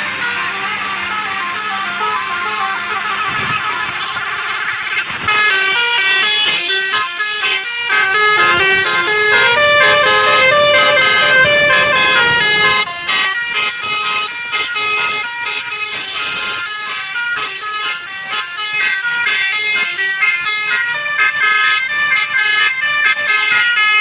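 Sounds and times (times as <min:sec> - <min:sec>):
bus horn playing a tune: 0:00.0 - 0:04.1, 0:04.9 - 0:24.0.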